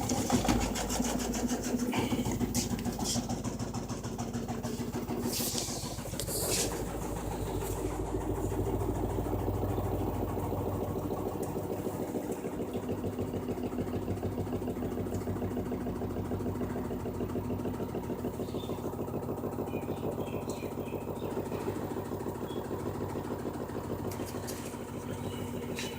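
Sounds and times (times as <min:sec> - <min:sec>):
washing machine humming and pulsing: 0:00.0 - 0:25.9.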